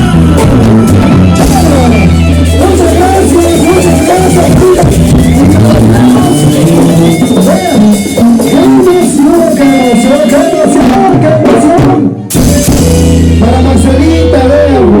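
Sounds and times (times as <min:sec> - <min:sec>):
held low bass note: 0:00.0 - 0:07.2, 0:12.4 - 0:15.0
live band music: 0:00.0 - 0:15.0.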